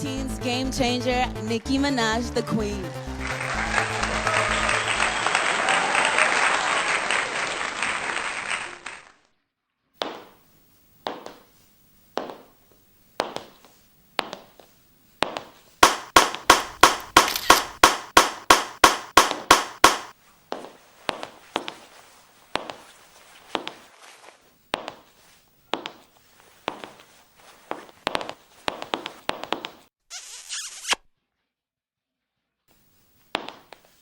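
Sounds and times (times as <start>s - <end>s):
audience applauding: 3.0s - 9.2s
high-heel footsteps clicking: 10.0s - 10.4s, 11.0s - 12.6s, 13.2s - 22.9s, 23.5s - 23.8s, 24.7s - 29.9s, 33.3s - 34.0s.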